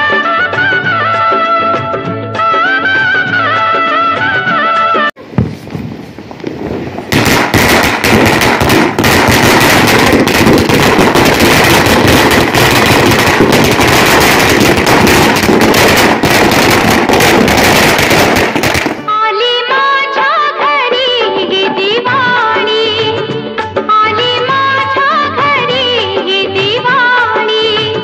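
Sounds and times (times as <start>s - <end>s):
firecrackers crackling: 5.2s - 19.2s.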